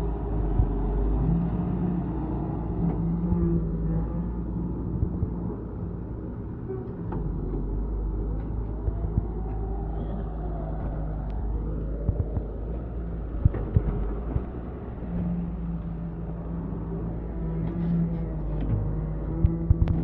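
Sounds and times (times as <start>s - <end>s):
diesel engine of heavy machinery: 0.0s - 20.0s.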